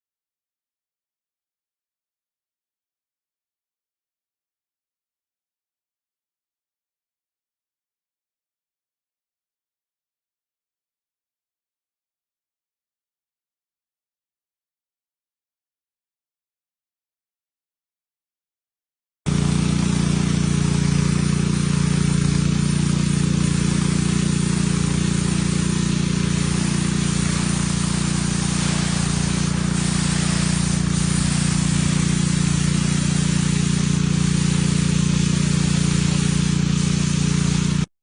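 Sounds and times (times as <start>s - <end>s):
high-pressure water jet hissing: 19.3s - 37.9s
pressure washer engine hum: 19.3s - 37.9s.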